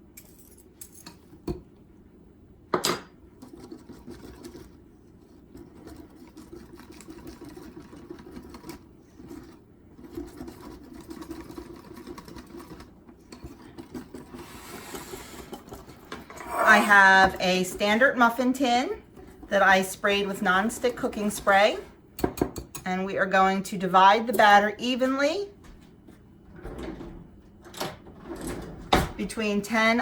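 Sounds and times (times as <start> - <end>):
stirring and scraping batter: 3.3 - 21.9.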